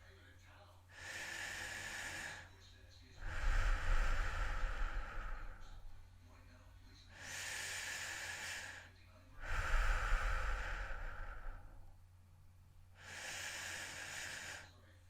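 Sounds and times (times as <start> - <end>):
person breathing heavily: 0.9 - 2.6, 3.2 - 6.0, 7.1 - 11.9, 13.0 - 14.8
air rumble on microphone: 3.2 - 6.1, 9.3 - 11.9.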